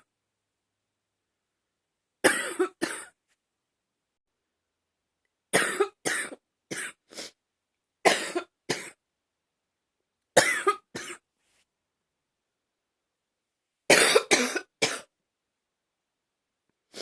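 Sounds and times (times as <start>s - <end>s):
woman coughing: 2.2s - 3.2s, 5.6s - 7.0s, 8.1s - 9.0s, 10.4s - 11.2s, 13.9s - 15.1s.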